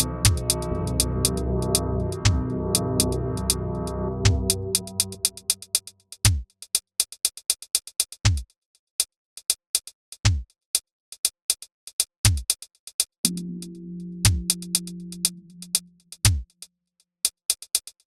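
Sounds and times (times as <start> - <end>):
hi-hat ticks: 0.0 - 3.6, 4.2 - 16.6, 17.2 - 18.0
synth drone chord: 0.0 - 5.6, 13.3 - 15.7
synthesized kick drum: 0.0 - 5.6, 13.3 - 16.4.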